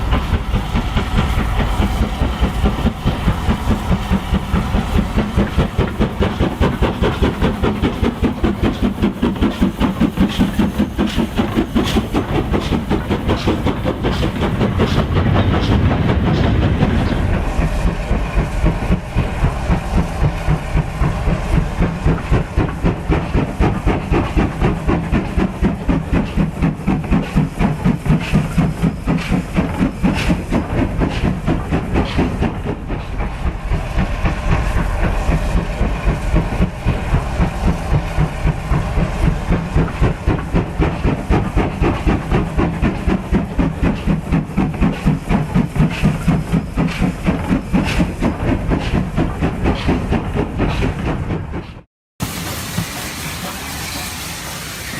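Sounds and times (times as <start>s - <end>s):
model steam train running: 0.0s - 54.9s
deep rumble: 13.9s - 23.1s.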